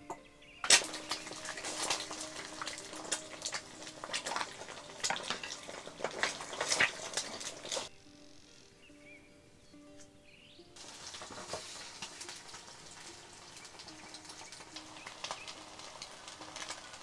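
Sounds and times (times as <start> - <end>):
food sizzling in a pan: 0.7 - 7.9, 10.8 - 17.0.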